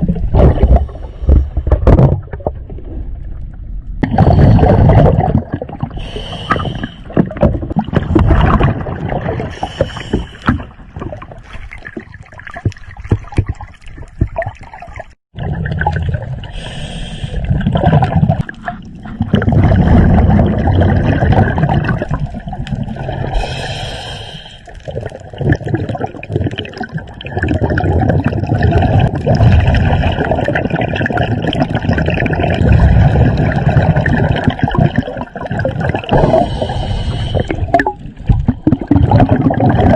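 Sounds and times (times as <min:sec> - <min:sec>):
exhaled bubbles gurgling: 0:00.0 - 0:39.9
regulator inhalation hiss: 0:16.6 - 0:17.4, 0:23.4 - 0:24.7, 0:36.4 - 0:37.5.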